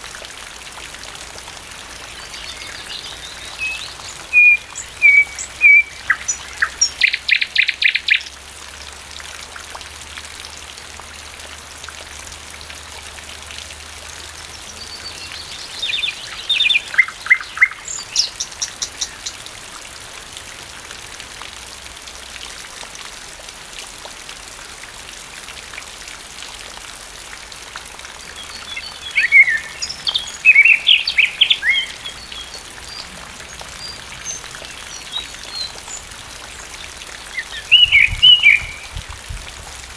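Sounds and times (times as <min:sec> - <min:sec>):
steady rain: 0:00.0 - 0:39.9
nightingale singing: 0:02.0 - 0:08.3, 0:14.5 - 0:19.4, 0:28.3 - 0:39.1.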